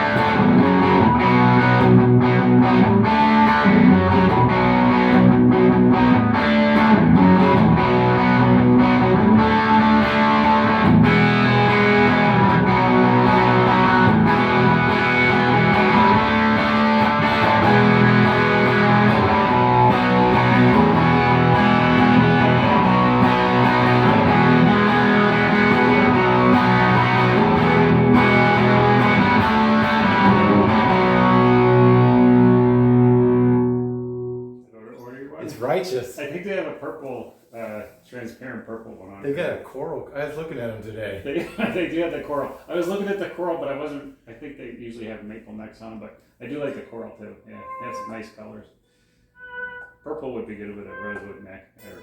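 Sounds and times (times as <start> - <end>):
overdriven electric guitar: 0.0 - 34.5.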